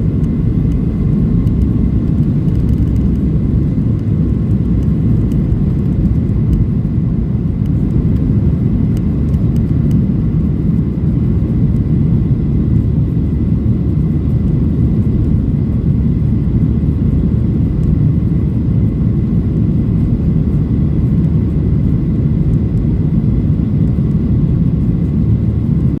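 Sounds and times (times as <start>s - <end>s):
jet engine rumble: 0.0s - 26.0s.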